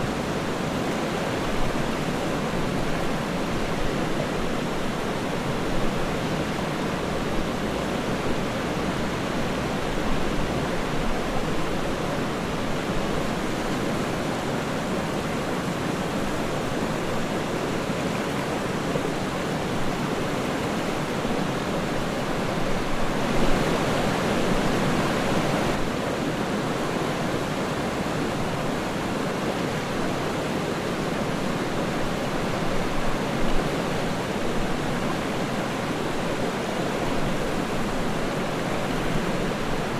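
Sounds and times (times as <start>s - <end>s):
waterfall rushing: 0.0s - 39.9s.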